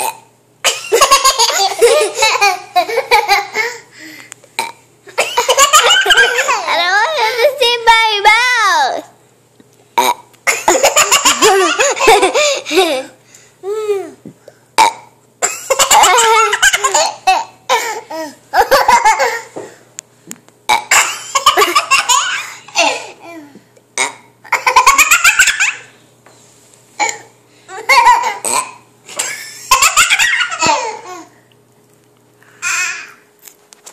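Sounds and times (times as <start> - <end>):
burping: 0.0 - 0.3, 4.6 - 4.8, 10.0 - 10.3, 14.8 - 15.1, 20.7 - 21.0, 28.4 - 28.8
hysterical laughter: 0.8 - 3.8, 10.5 - 13.1.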